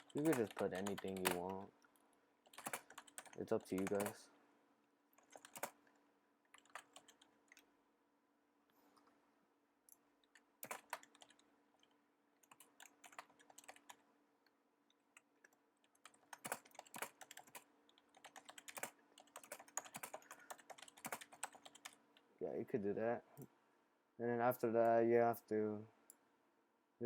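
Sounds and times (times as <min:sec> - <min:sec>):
typing on computer keyboard: 0:00.0 - 0:01.6, 0:02.4 - 0:04.2, 0:05.2 - 0:05.9, 0:06.5 - 0:07.7, 0:10.2 - 0:11.5, 0:12.4 - 0:14.0, 0:15.1 - 0:22.0.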